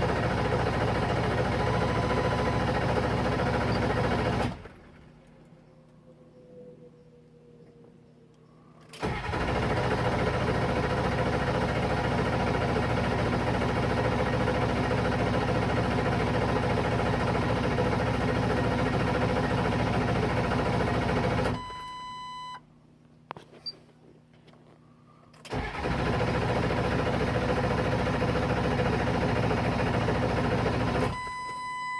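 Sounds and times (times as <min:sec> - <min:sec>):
engine cranking without starting: 0:00.0 - 0:05.2, 0:08.9 - 0:21.6, 0:25.4 - 0:31.2.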